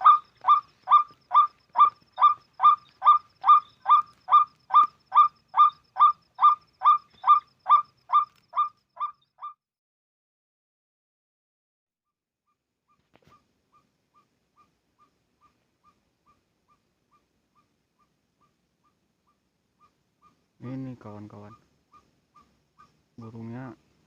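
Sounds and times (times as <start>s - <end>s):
waterhen harsh honking call: 0.0s - 8.7s.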